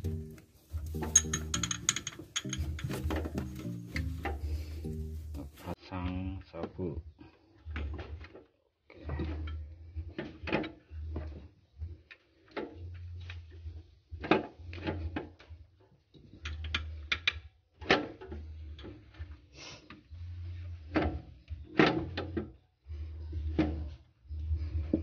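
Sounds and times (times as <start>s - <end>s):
metal tools knocking and clicking: 0.8s - 3.6s.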